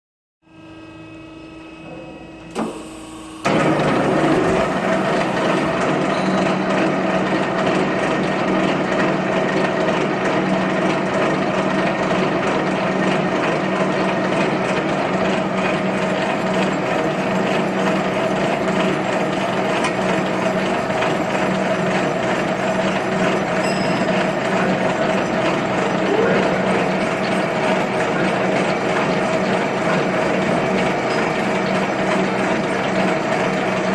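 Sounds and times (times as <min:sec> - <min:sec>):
machine hum: 0:00.5 - 0:33.9
milling machine cutting: 0:02.1 - 0:08.6, 0:13.3 - 0:33.9.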